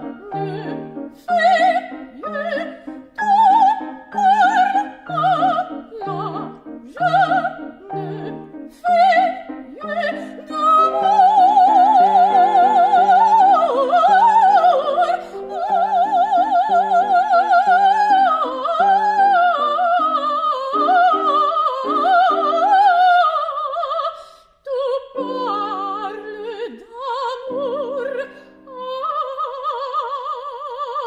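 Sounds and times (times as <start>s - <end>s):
piano playing repeated chords: 0.0s - 22.9s
soprano singing operatic aria: 0.0s - 31.0s.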